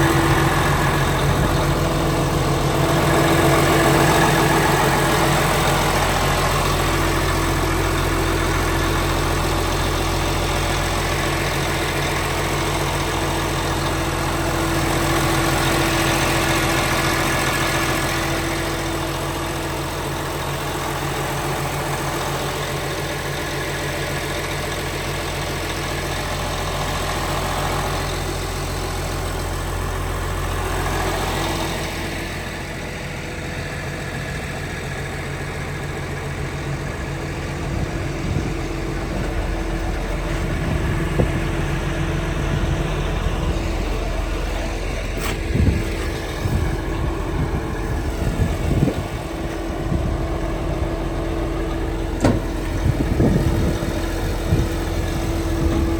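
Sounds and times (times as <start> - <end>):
diesel engine running: 0.0 - 55.9
sharp knocks and clanks: 52.2 - 52.7.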